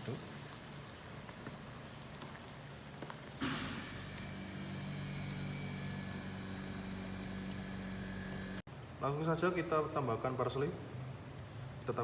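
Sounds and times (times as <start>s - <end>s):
motor humming: 4.0s - 8.6s.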